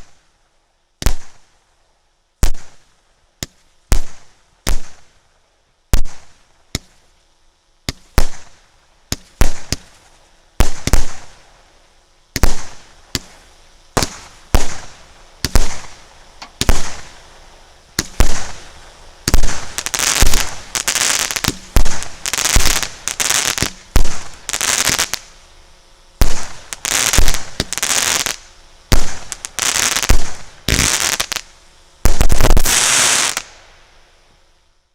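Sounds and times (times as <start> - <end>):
firework hiss: 0.0 - 34.9
firework shots firing: 1.0 - 1.5, 2.4 - 5.2, 5.9 - 7.1, 7.9 - 11.5, 12.3 - 25.4, 26.2 - 33.6.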